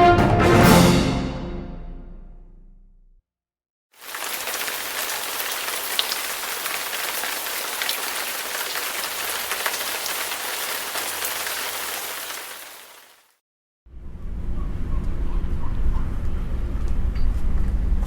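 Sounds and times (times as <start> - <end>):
rain falling on a surface: 4.0 - 13.4.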